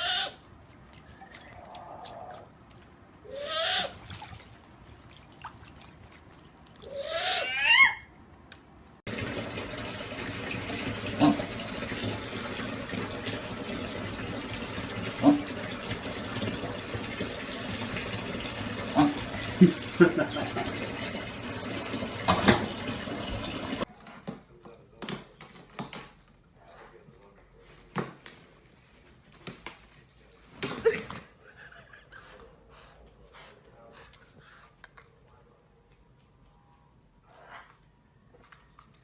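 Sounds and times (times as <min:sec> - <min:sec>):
running water from tap: 0:09.1 - 0:23.9.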